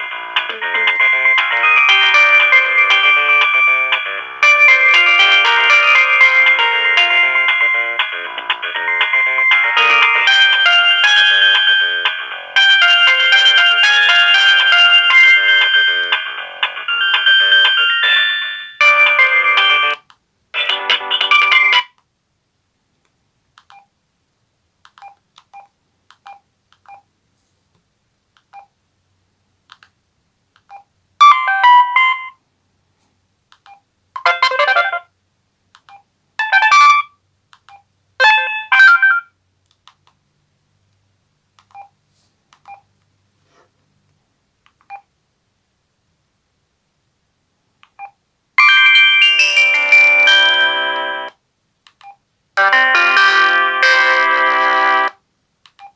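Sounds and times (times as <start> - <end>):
phone ringtone snippets: 0.2 - 20.0, 20.6 - 21.9, 31.2 - 32.3, 34.2 - 35.1, 38.2 - 39.3, 48.6 - 51.3, 52.6 - 55.1.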